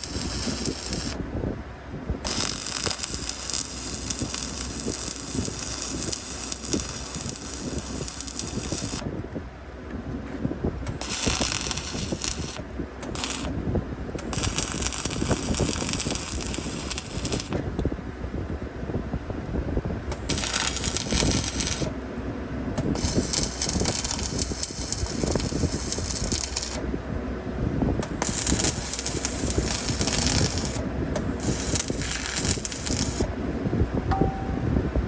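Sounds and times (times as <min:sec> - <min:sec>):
welding arc crackling: 0:00.0 - 0:01.2, 0:02.2 - 0:09.1, 0:10.9 - 0:13.6, 0:14.2 - 0:17.6, 0:20.1 - 0:22.0, 0:22.8 - 0:26.8, 0:28.0 - 0:33.3
steady low rumble: 0:00.0 - 0:35.0.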